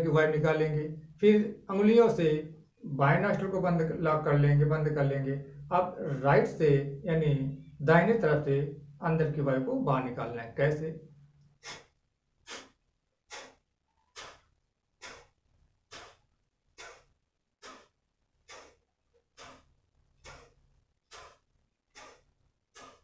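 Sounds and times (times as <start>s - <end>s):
forceful nasal exhalations: 11.2s - 23.0s.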